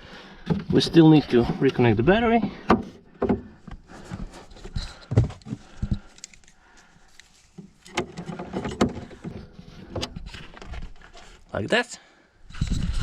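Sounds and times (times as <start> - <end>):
knocks and thumps: 2.6 - 6.0, 7.6 - 10.8.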